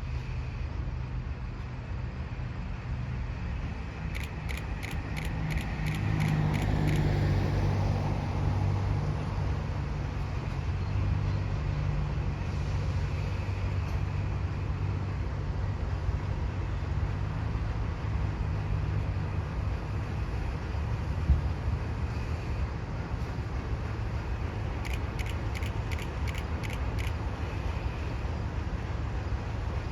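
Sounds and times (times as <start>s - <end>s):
locomotive engine rumbling: 3.6s - 11.6s.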